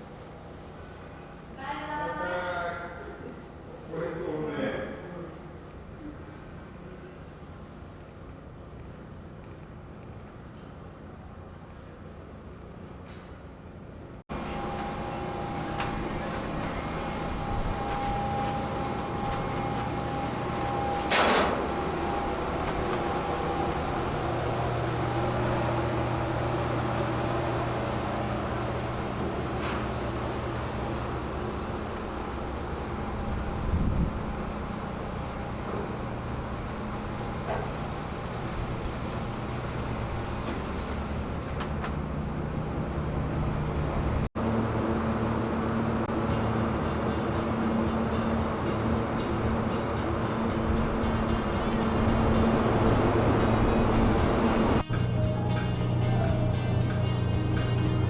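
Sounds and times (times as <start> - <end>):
vehicle interior hum: 14.3 - 58.0.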